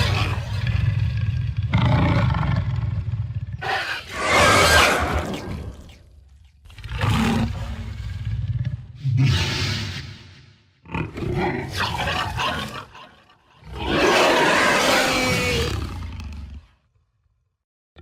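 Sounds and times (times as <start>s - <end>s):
monster roars: 0.0s - 2.7s, 3.6s - 5.8s, 13.6s - 16.6s.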